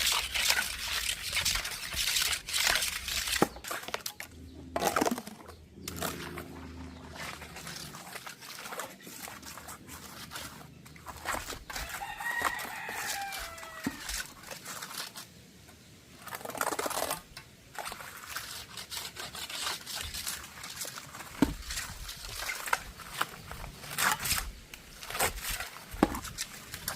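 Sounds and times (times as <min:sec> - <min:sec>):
short scrapes and knocks: 0:00.0 - 0:26.9
rooster crowing: 0:11.8 - 0:14.1.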